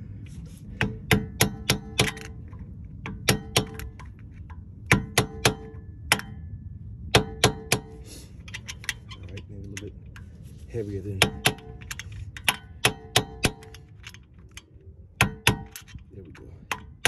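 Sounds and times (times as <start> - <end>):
hammer tapping on screwdriver: 11.2 - 13.8.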